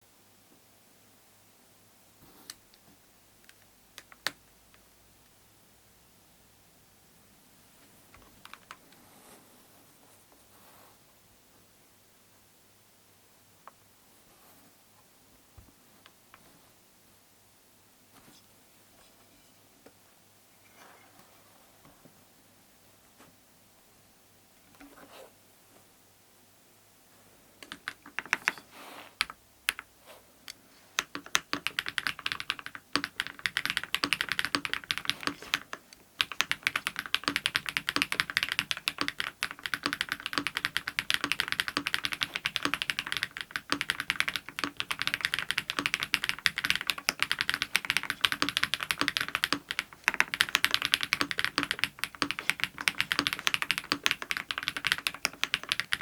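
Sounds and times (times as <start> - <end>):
mechanical keyboard typing: 8.2 - 8.8, 27.6 - 28.6, 29.2 - 29.9, 31.0 - 56.0.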